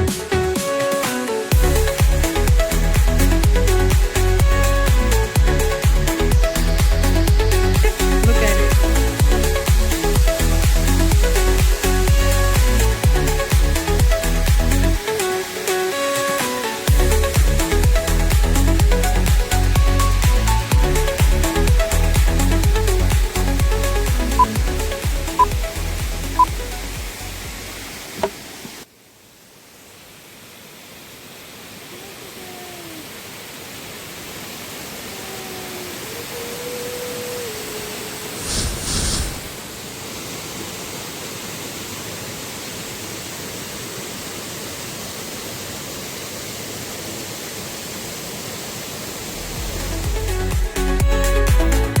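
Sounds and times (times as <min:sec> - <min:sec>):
background music: 0:00.0 - 0:28.0, 0:49.5 - 0:52.0
burst of noise: 0:38.1 - 0:39.8.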